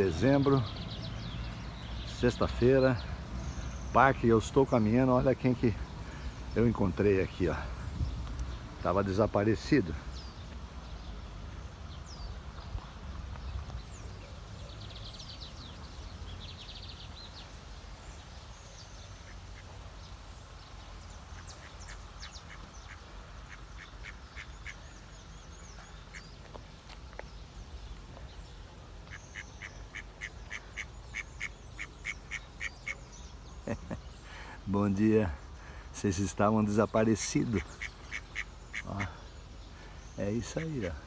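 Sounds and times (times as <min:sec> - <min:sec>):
low wind rumble: 0:00.0 - 0:41.0
ducks quacking: 0:21.3 - 0:24.9, 0:29.0 - 0:33.0, 0:37.4 - 0:39.3.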